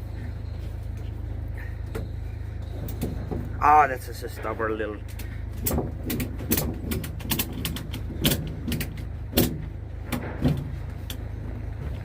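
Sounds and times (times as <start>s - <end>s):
steady low rumble: 0.0s - 12.0s
tie-down strap clicks and knocks: 5.1s - 11.2s.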